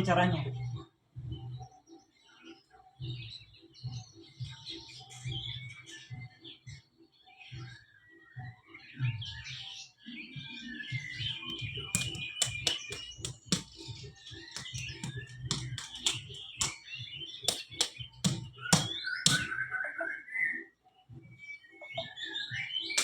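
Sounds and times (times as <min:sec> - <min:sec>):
birds chirping: 0:00.6 - 0:23.0
hands slapping on body: 0:11.4 - 0:16.8, 0:17.5 - 0:19.6.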